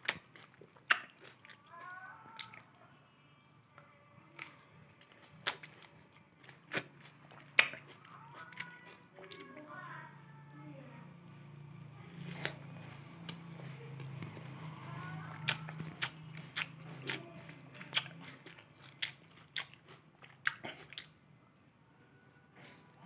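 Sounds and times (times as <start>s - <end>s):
chewing: 0.0s - 3.0s, 3.7s - 9.7s, 12.0s - 21.2s
crisp bites into grapes: 12.2s - 12.6s.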